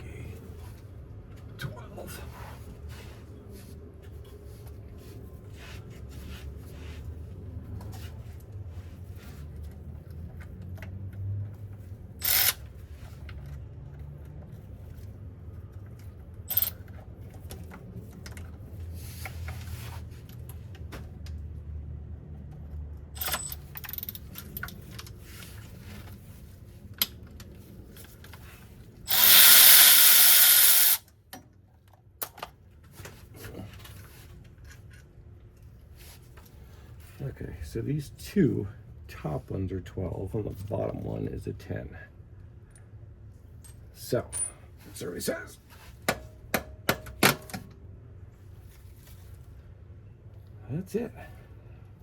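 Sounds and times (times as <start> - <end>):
power tool spinning out bolt: 12.2 - 12.6, 29.1 - 31.0
hand tools clicking and knocking: 29.1 - 31.0.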